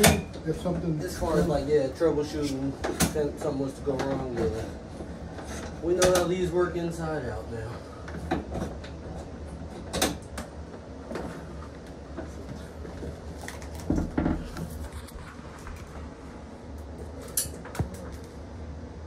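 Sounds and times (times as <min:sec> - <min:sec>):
bed parts knocking and clicking: 0:00.0 - 0:01.6, 0:02.8 - 0:04.8, 0:05.4 - 0:06.4, 0:08.1 - 0:14.7
low steady hum: 0:00.0 - 0:19.0.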